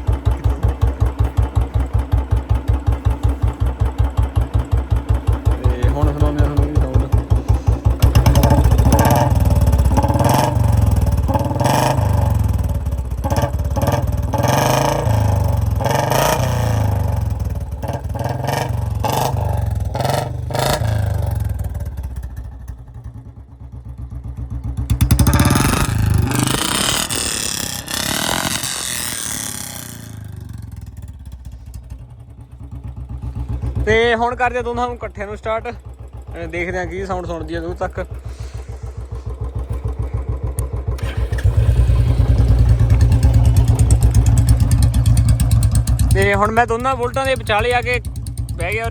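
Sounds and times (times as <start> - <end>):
motorcycle engine revving: 0.0 - 48.9.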